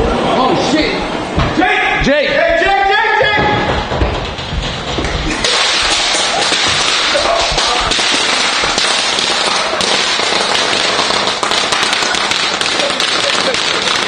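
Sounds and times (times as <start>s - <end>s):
firecrackers popping: 3.6s - 14.0s.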